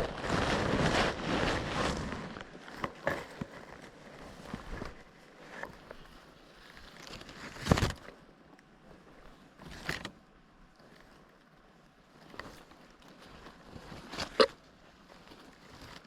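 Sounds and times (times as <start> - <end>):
rustling and crunching in undergrowth: 0.0 - 16.0.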